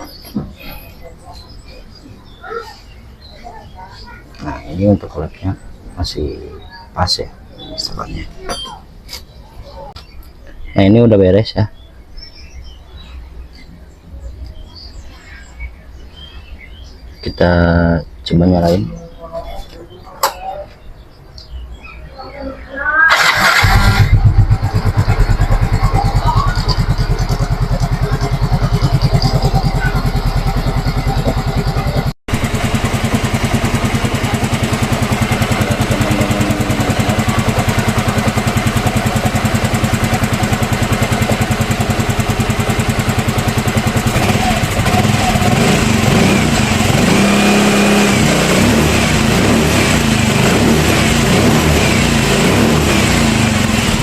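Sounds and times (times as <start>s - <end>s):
scooter engine starting and running: 23.1s - 54.0s.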